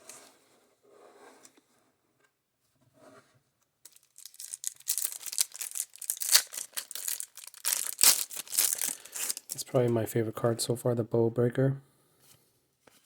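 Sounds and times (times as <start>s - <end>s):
trading cards rustling: 3.9s - 9.8s.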